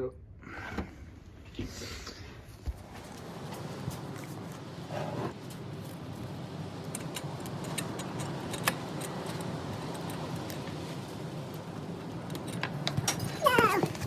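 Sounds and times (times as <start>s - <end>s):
light ticks and clicks: 6.8s - 13.3s.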